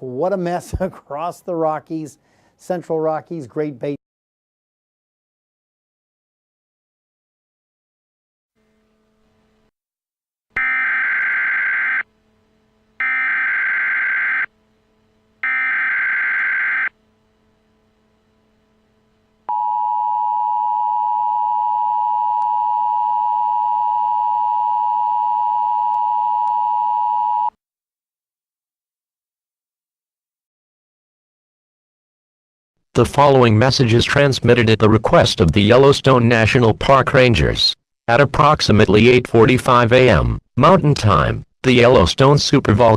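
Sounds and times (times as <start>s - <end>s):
buzzing digital data bursts: 10.6s - 12.1s, 13.0s - 14.5s, 15.4s - 16.9s.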